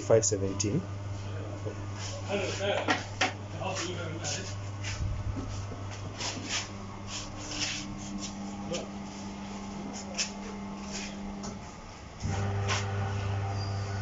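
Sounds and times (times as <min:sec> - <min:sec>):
wheel balancing machine motor: 0:08.2 - 0:14.0.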